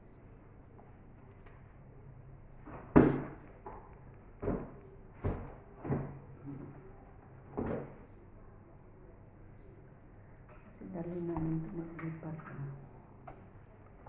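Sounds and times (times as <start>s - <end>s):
knocks of things handled: 2.6s - 6.2s.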